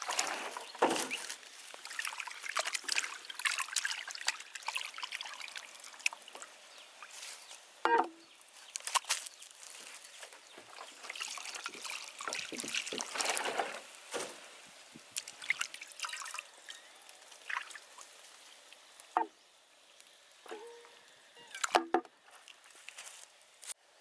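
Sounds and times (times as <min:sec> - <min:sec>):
water trickling and pouring: 0:00.0 - 0:14.1, 0:14.8 - 0:19.3.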